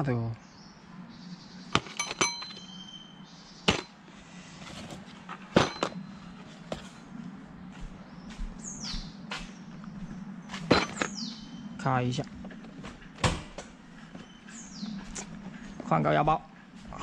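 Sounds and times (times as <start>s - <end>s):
metal hand tools clinking: 1.8s - 2.7s.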